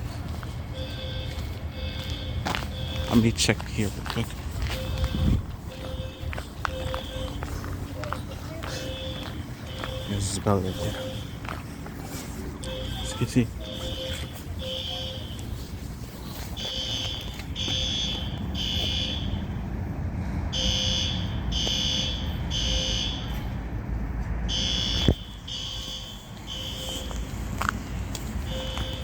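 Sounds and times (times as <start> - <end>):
fire alarm beeping: 0.7 - 3.3, 4.7 - 7.5, 8.7 - 11.4, 12.6 - 15.6, 16.5 - 19.5, 20.5 - 23.4, 24.5 - 27.2, 28.5 - 29.0.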